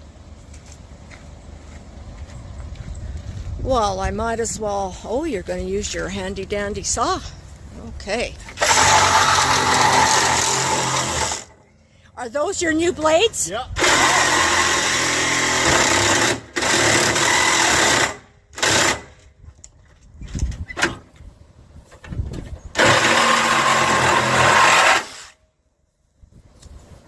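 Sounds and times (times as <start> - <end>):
power saw cutting: 8.5 - 11.6, 13.8 - 19.1, 22.8 - 25.4.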